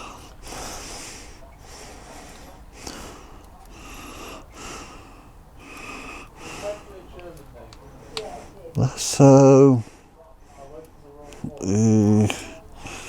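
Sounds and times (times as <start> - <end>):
person breathing close to microphone: 0.0 - 7.0, 11.3 - 13.0.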